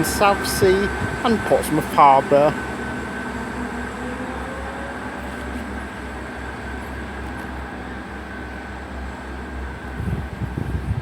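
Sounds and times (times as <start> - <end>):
train diesel drone: 0.0 - 11.0
faint rising whine: 1.0 - 8.2.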